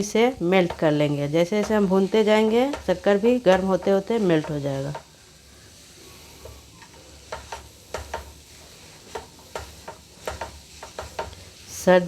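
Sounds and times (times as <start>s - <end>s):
spoon scraping and knocking pan: 0.0s - 11.8s
faint sizzle: 0.0s - 12.0s.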